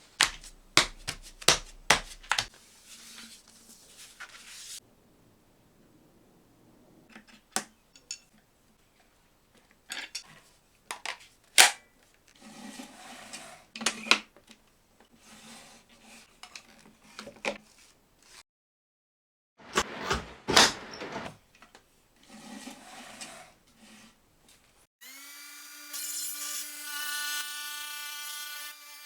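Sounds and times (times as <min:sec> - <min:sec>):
brief scraping: 0:19.6 - 0:21.4.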